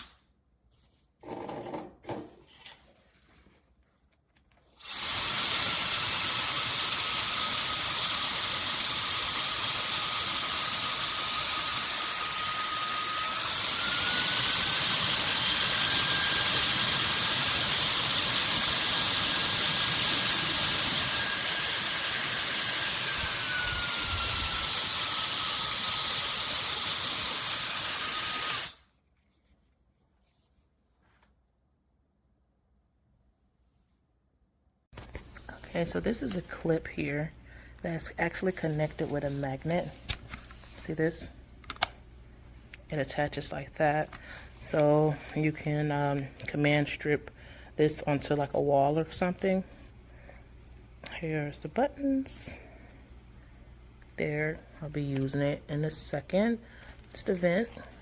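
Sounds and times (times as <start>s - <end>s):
hair dryer blowing: 4.8s - 28.8s.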